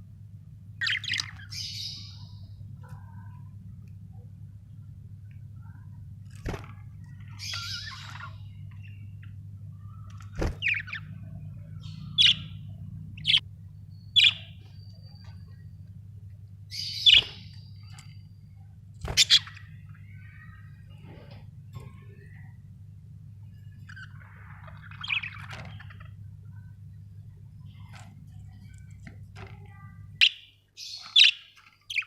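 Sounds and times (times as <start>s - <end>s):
low hum: 0.0s - 30.3s
budgerigars chirping and squawking: 0.8s - 2.5s, 7.1s - 15.6s, 16.7s - 18.2s, 19.0s - 21.4s, 23.6s - 26.3s, 30.2s - 32.0s.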